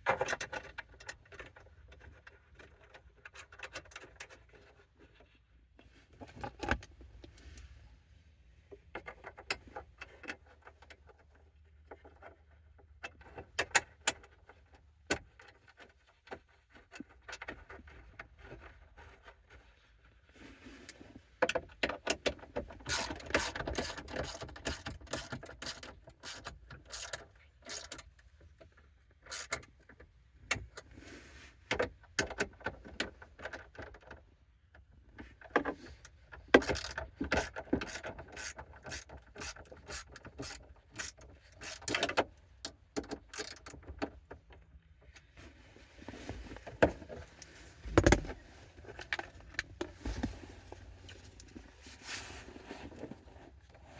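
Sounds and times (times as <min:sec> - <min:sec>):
metal and plastic parts rattling: 0:21.4 - 0:29.7, 0:35.3 - 0:44.6, 0:46.1 - 0:51.7.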